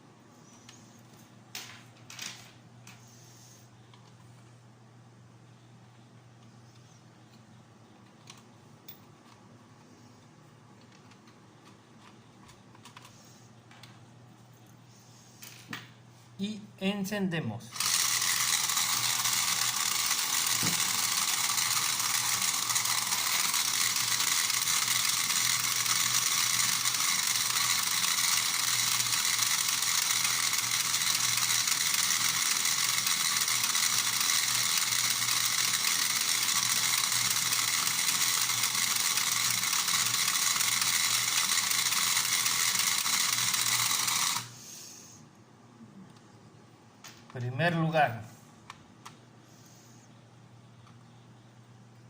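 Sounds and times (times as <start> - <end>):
toy motor buzzing rattle: 17.7 - 44.6.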